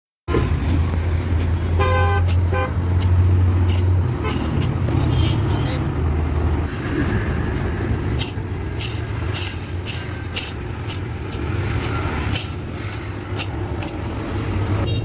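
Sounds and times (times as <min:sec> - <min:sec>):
sharp clicks from clutch bearing: 0:02.2 - 0:05.1, 0:07.6 - 0:14.2.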